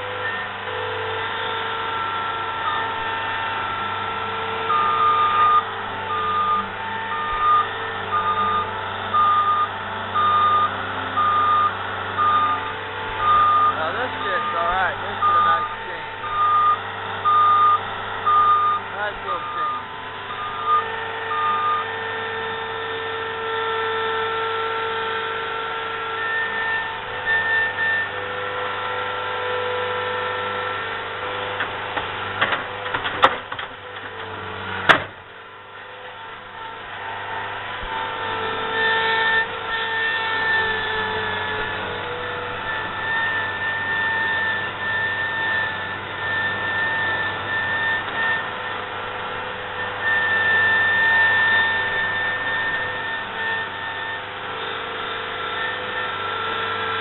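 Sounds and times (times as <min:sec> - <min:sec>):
diesel engine and hydraulics running: 0:00.0 - 0:57.0
sharp knocks: 0:34.9 - 0:35.2.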